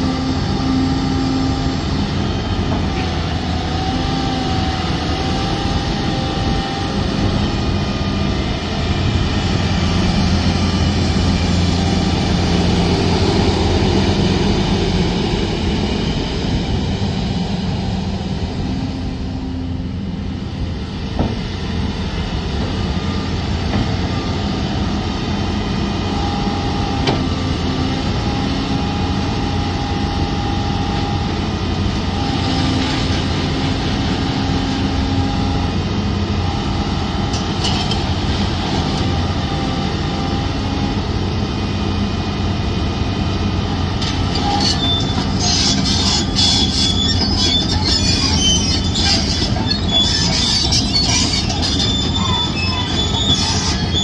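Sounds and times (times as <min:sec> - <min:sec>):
excavator diesel engine rumbling: 0:00.0 - 0:54.0
metallic squealing and clanking: 0:44.0 - 0:54.0.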